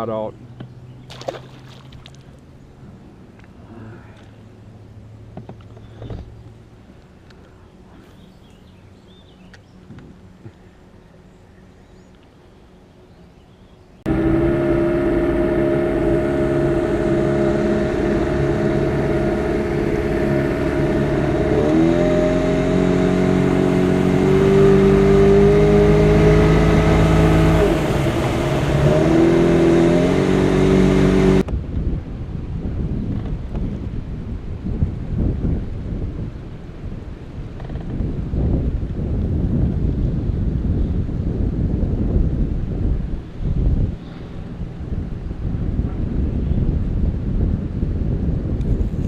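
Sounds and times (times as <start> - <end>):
motorboat engine running: 14.1 - 49.0.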